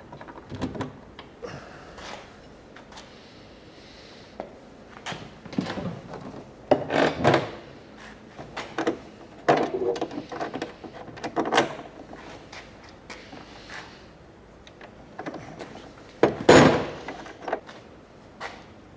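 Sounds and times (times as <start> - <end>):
hard parts knocking and rattling: 8.6 - 11.8.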